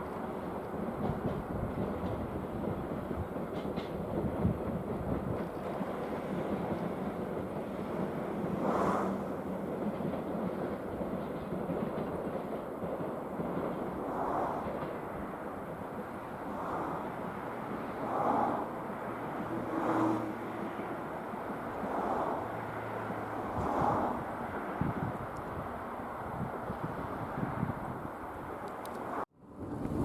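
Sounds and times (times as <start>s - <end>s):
freight train wheels rumbling: 0.0s - 30.0s.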